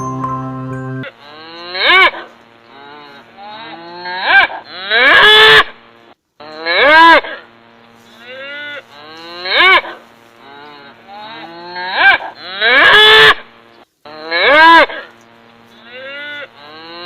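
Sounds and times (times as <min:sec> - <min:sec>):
cattle mooing: 0:10.4 - 0:13.1, 0:15.8 - 0:17.0.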